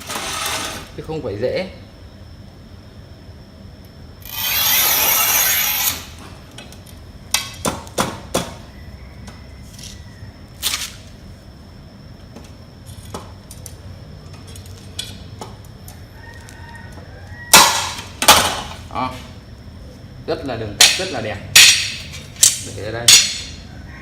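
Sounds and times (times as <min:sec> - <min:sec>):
tile snapping crack: 0:20.8 - 0:23.4.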